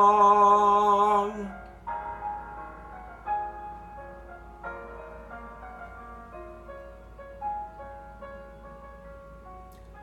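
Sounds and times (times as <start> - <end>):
piano playing held chords: 0.0 - 10.0.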